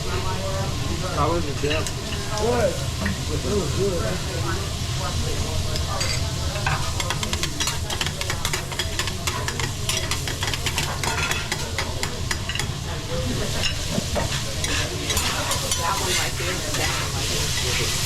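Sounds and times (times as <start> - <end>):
food sizzling on a griddle: 0.0 - 18.0
metal spatulas scraping steel: 14.3 - 17.9.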